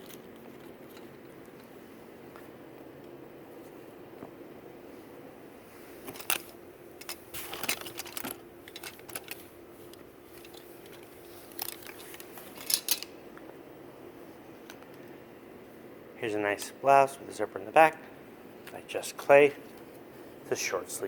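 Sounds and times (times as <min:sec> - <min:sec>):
faint steady hum: 0:00.0 - 0:21.0
clothing rustling and clicking: 0:05.1 - 0:13.6.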